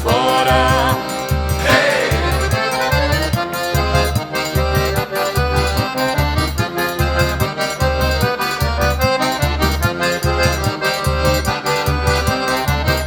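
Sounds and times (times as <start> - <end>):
accordion melody: 0.0 - 13.0
steady low beat: 0.6 - 4.0.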